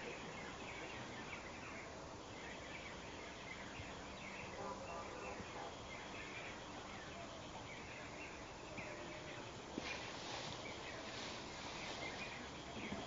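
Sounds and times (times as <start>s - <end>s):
birds chirping: 0.0s - 13.0s
outdoor ambience hiss: 0.0s - 13.0s.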